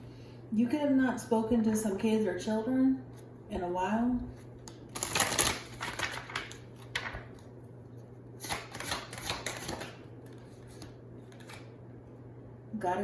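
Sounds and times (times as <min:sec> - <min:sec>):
cards being shuffled: 0:04.6 - 0:07.5, 0:08.4 - 0:11.7.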